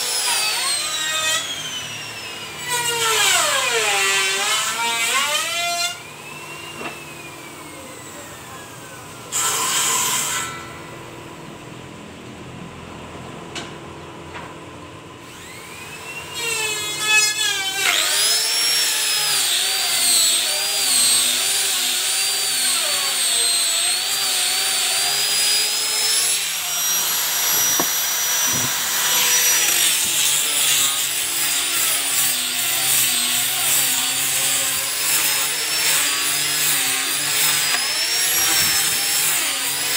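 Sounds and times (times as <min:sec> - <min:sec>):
hand grinder sanding wood: 0:17.0 - 0:39.9.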